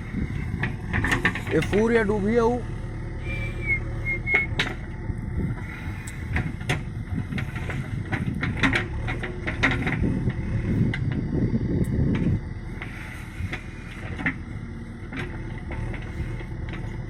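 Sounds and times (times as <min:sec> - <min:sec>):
diesel engine running: 0:00.0 - 0:17.0
machine knocks and clanks: 0:00.5 - 0:02.3, 0:06.3 - 0:11.3.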